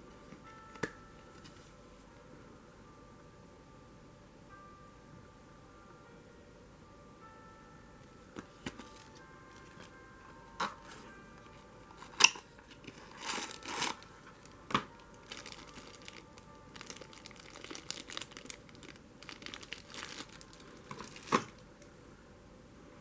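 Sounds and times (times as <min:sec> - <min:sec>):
packaging crinkling and rustling: 0:08.5 - 0:10.0, 0:11.9 - 0:21.7.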